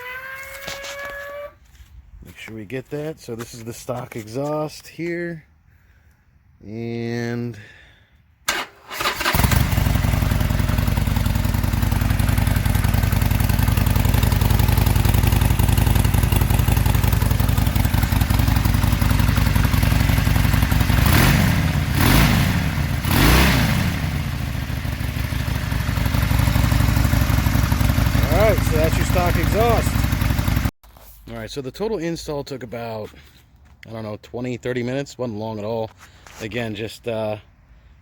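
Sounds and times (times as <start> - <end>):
motorcycle engine revving: 8.9 - 30.7
motorcycle engine idling: 9.0 - 30.7.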